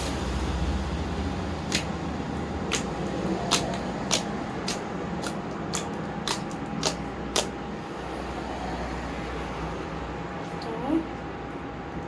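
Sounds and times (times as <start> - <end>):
steady background hum: 0.0 - 12.0.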